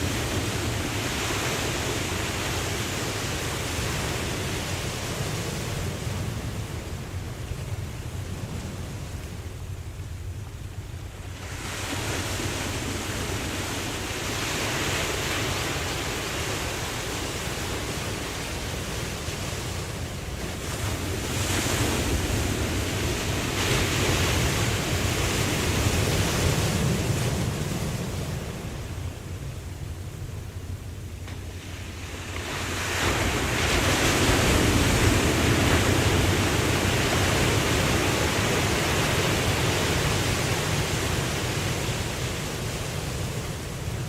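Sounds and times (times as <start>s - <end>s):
ocean waves breaking: 0.0s - 44.0s
wind rumble on microphone: 0.0s - 44.0s.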